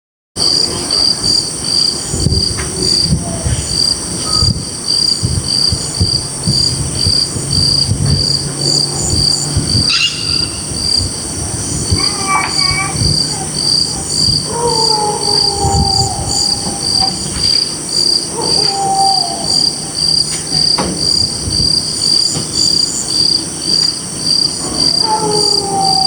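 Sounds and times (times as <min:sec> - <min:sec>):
crickets chirping: 0:00.4 - 0:26.0
high insect trill: 0:00.4 - 0:26.0
low rumble: 0:02.1 - 0:18.1
wavering call: 0:06.7 - 0:20.7.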